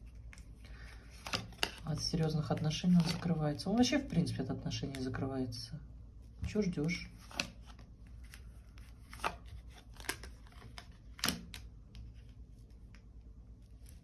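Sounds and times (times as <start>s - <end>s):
cards clicking and tapping: 0.2s - 5.2s, 9.0s - 12.1s.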